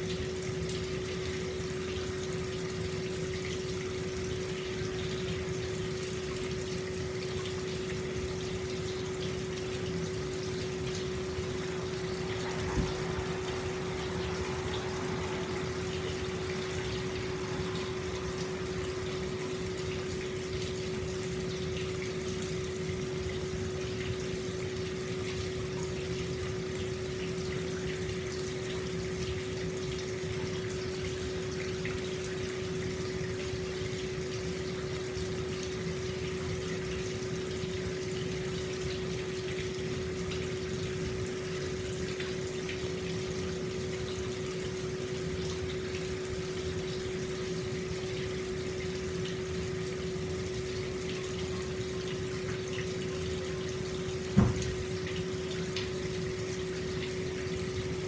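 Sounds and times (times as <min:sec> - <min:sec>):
water pouring into a bath: 0:00.0 - 0:58.0
constant low hum: 0:07.4 - 0:26.6.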